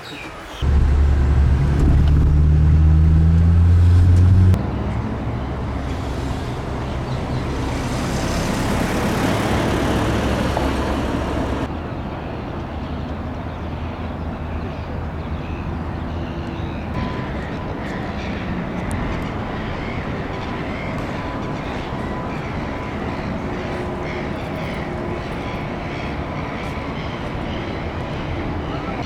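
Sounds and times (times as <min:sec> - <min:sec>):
vehicles passing: 0:00.4 - 0:12.0, 0:14.3 - 0:29.0
loud low engine drone: 0:00.6 - 0:11.7.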